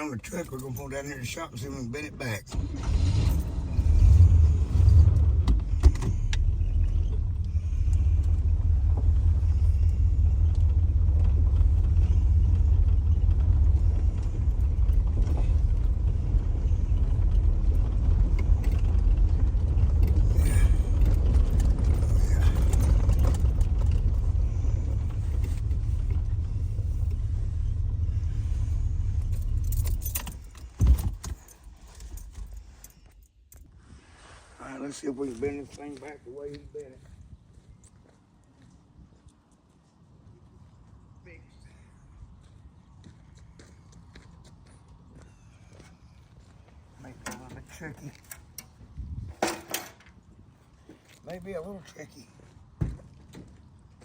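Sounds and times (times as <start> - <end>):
truck engine and road rumble: 0.0 - 54.0
light rattling: 2.6 - 33.3.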